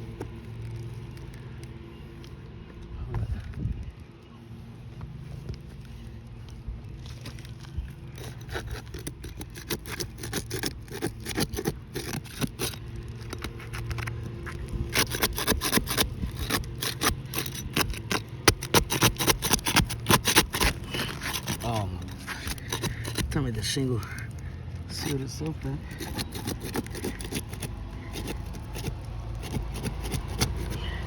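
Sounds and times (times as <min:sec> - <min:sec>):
tool scraping under roof shingles: 0:07.0 - 0:31.0.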